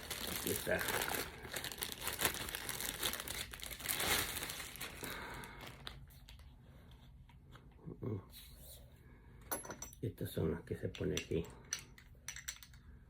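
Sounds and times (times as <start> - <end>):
packaging crinkling and rustling: 0.0 - 6.5.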